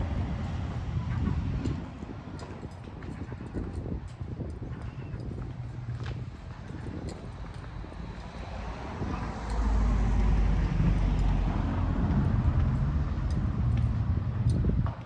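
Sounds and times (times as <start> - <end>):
vehicle passing by: 7.3 - 14.8.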